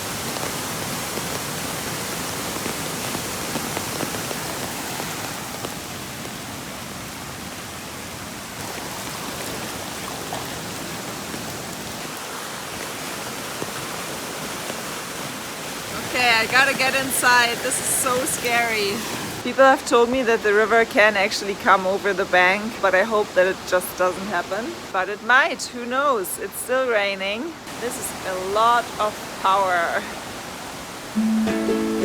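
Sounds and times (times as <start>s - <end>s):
heavy rain falling: 0.0s - 19.5s
flooded creek rushing: 0.0s - 32.0s.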